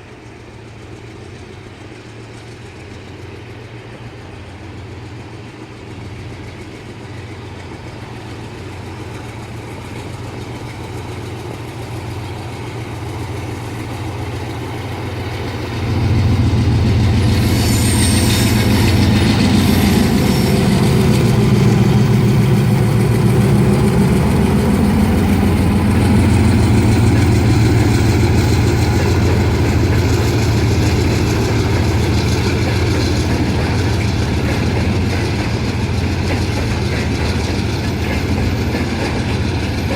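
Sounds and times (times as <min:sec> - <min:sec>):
diesel locomotive engine drone: 0:00.0 - 0:39.9
rumble of rolling train: 0:00.0 - 0:39.9.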